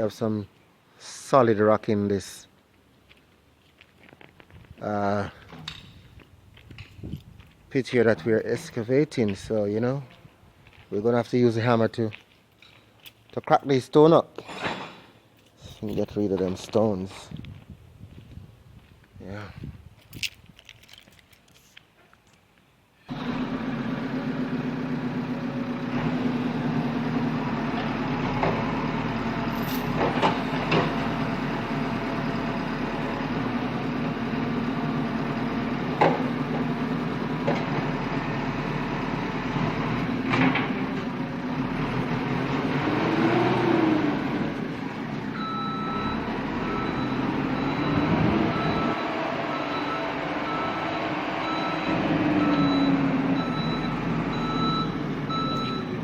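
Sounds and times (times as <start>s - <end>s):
backhoe diesel engine running: 23.1s - 56.0s
reversing alarm beeping: 45.4s - 56.0s.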